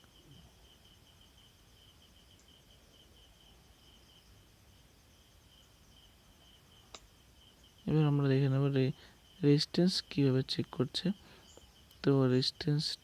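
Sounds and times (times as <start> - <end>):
faint high-pitched chirping: 0.0 - 13.0.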